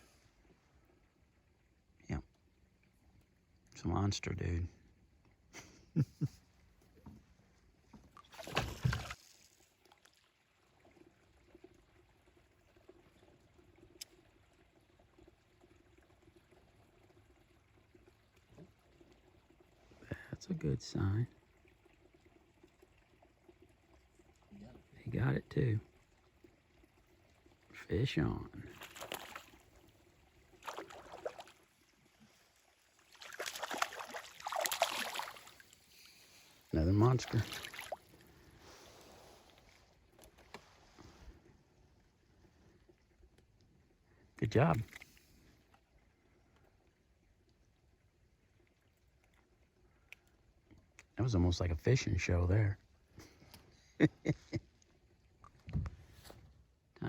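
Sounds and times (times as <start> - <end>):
water splashing: 8.0 - 27.7, 28.4 - 41.2
water splash: 8.2 - 9.8, 28.6 - 29.8, 30.5 - 31.7, 33.0 - 35.8, 36.8 - 38.2.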